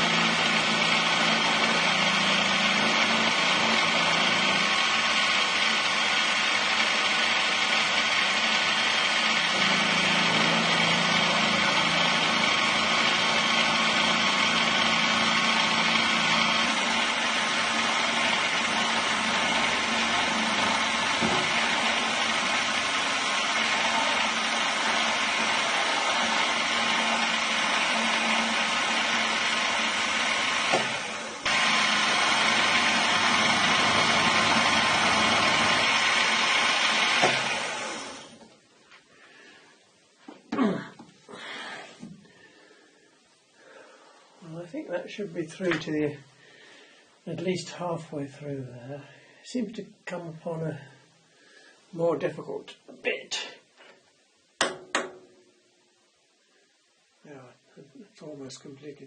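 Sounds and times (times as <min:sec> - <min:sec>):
drill bit drilling into steel: 0:00.0 - 0:38.4.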